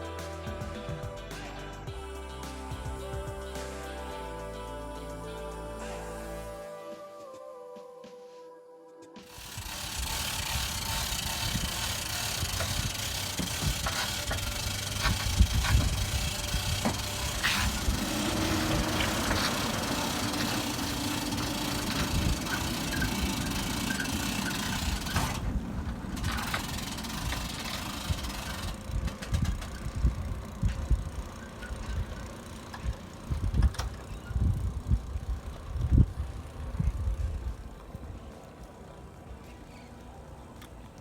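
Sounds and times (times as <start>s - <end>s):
engine running: 9.3s - 41.0s
rattles and knocks: 12.4s - 34.1s.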